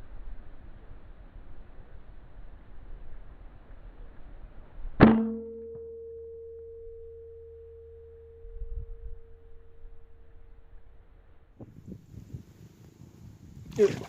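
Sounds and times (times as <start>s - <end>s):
long metallic ring: 5.0s - 11.6s.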